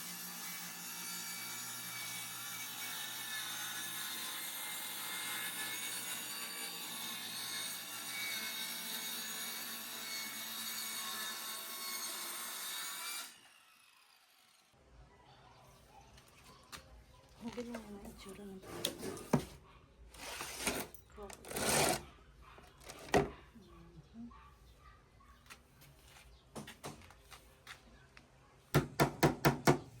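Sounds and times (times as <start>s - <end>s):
power tool whining on wood: 0.0s - 14.8s, 20.2s - 22.0s.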